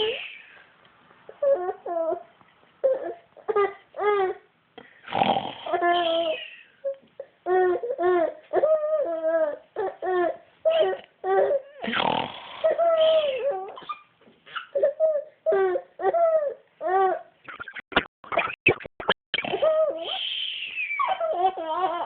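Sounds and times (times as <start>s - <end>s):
child fake snoring: 5.1s - 6.3s, 11.8s - 12.9s
high-pitched squealing vocal sounds: 17.5s - 21.4s.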